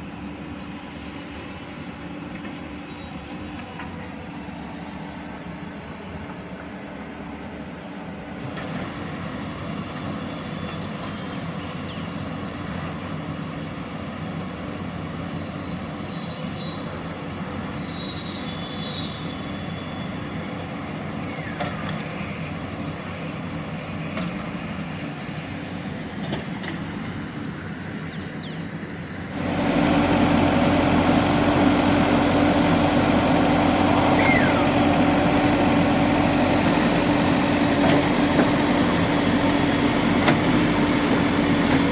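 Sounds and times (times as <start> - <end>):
diesel engine running: 19.4 - 41.9.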